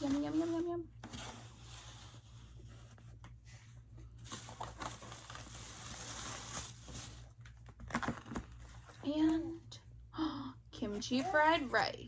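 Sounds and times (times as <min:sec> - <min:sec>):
plastic packaging crinkling: 0:04.2 - 0:09.0.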